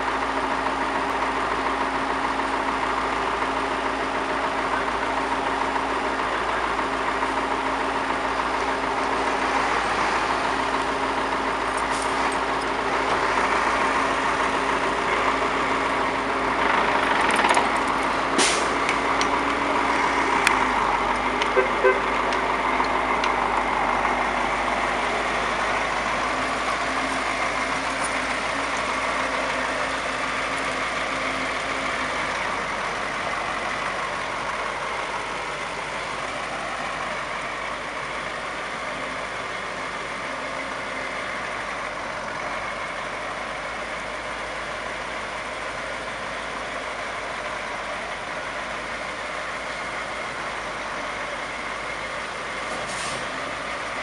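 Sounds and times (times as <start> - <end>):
heavy vehicle engine running: 0.0 - 54.0.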